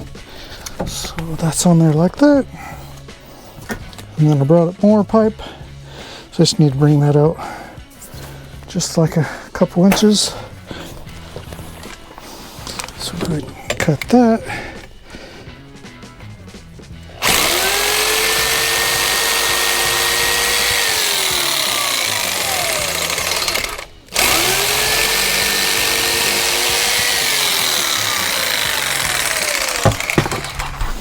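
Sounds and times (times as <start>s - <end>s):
power tool cutting pipe: 17.0s - 31.0s.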